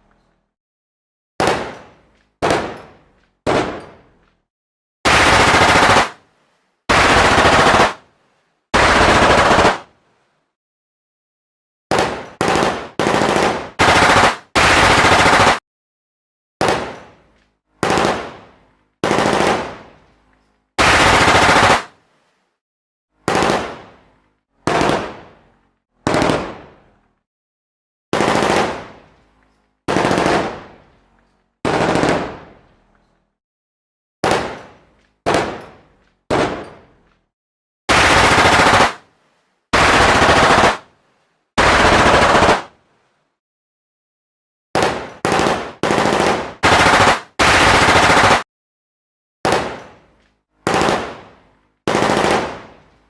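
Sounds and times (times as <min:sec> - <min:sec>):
machine-gun fire bursts: 0:01.4 - 0:01.8, 0:02.4 - 0:02.8, 0:03.4 - 0:03.8, 0:05.1 - 0:06.2, 0:06.9 - 0:08.0, 0:08.8 - 0:09.9, 0:11.9 - 0:15.6, 0:16.6 - 0:17.0, 0:17.8 - 0:19.9, 0:20.8 - 0:22.0, 0:23.2 - 0:23.9, 0:24.7 - 0:25.3, 0:26.0 - 0:26.8, 0:28.1 - 0:29.0, 0:29.9 - 0:30.8, 0:31.6 - 0:32.6, 0:34.2 - 0:34.6, 0:35.2 - 0:35.6, 0:36.3 - 0:36.7, 0:37.9 - 0:39.0, 0:39.7 - 0:40.9, 0:41.6 - 0:42.8, 0:44.8 - 0:48.5, 0:49.4 - 0:49.8, 0:50.6 - 0:51.3, 0:51.9 - 0:52.8.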